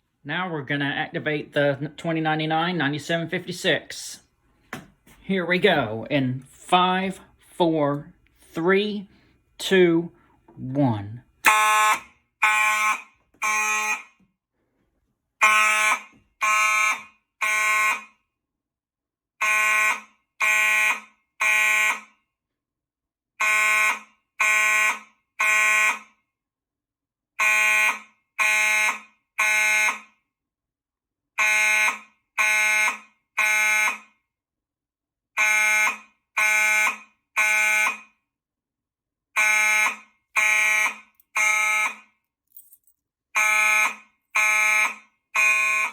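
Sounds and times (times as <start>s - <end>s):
fire alarm horn blasts: 10.9s - 14.2s, 15.4s - 18.3s, 19.4s - 22.2s, 23.4s - 26.3s, 27.4s - 30.3s, 31.4s - 34.2s, 35.3s - 38.2s, 39.3s - 42.2s, 43.3s - 45.9s.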